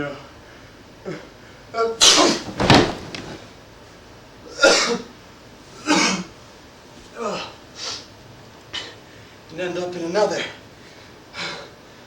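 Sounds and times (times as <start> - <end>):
heavy thump or slam: 2.0 - 3.5.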